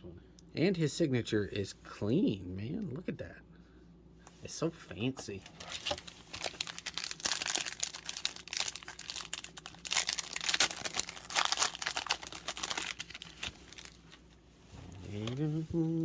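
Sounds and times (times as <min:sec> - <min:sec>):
plastic wrapper tearing and crinkling: 0:05.4 - 0:14.4.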